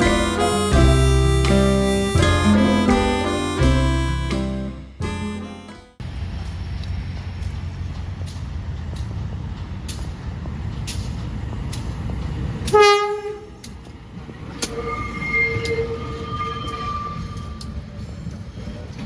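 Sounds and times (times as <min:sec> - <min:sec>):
train rumbling: 0:00.0 - 0:05.3, 0:06.0 - 0:19.0
train horn blast: 0:00.0 - 0:05.8, 0:12.7 - 0:13.5
rail clicks: 0:06.0 - 0:19.0.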